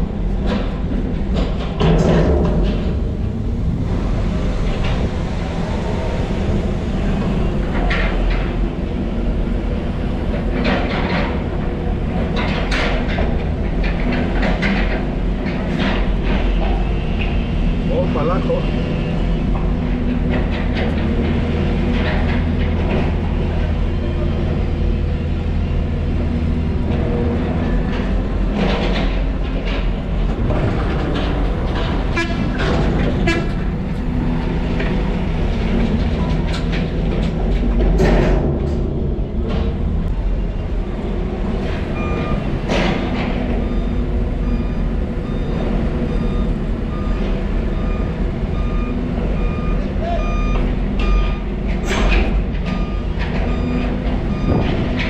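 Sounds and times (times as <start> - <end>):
diesel excavator running: 0.0 - 55.0
back-up alarm beeping: 41.9 - 51.6, 52.6 - 55.0.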